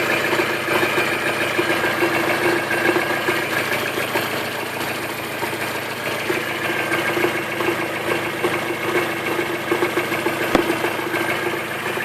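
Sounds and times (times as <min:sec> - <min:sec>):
engine idling with metallic knock: 0:00.0 - 0:12.0
sharp click: 0:10.6 - 0:10.8.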